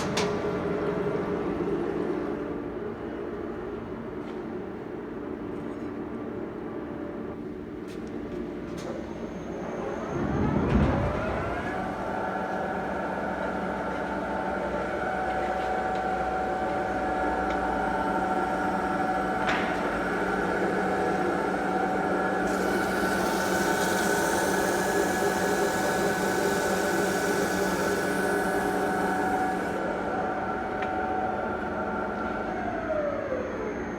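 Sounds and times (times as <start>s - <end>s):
lathe spindle whine and hum: 8.5s - 33.9s.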